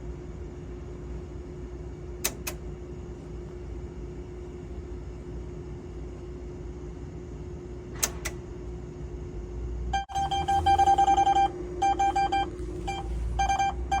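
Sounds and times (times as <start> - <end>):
steady electrical hum: 0.0 - 14.0
atm short electronic beeps: 10.0 - 14.0.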